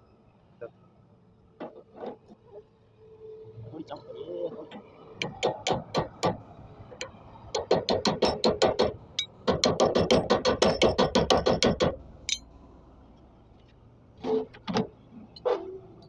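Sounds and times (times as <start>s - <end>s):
hammer striking metal: 7.6s - 12.5s.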